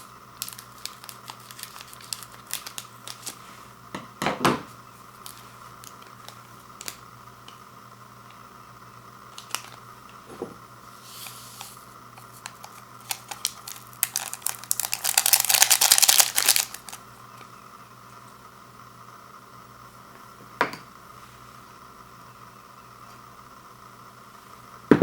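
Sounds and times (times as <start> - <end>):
plastic packet crinkling: 0.0 - 3.4, 5.2 - 7.0, 9.3 - 9.8, 12.2 - 17.0.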